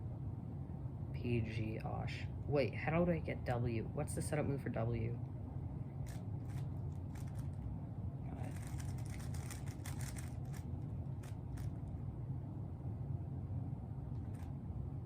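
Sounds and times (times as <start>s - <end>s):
low hum: 0.0s - 15.0s
puzzle cube turning clicks: 8.5s - 11.8s.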